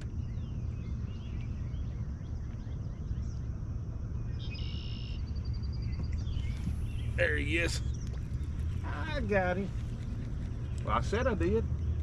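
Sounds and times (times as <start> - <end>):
bird chirps: 0.0 - 12.0
low rumble: 0.0 - 12.0.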